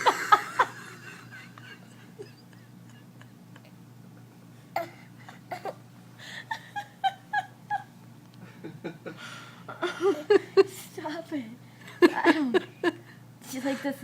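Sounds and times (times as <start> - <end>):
small child giggling: 6.5 - 7.9, 9.8 - 10.8.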